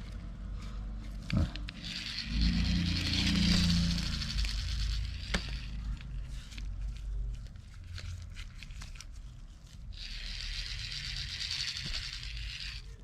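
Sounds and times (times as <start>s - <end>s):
fishing reel clicks: 1.7s - 6.7s, 10.0s - 13.0s
fishing reel whirring: 1.7s - 7.0s, 9.9s - 13.0s.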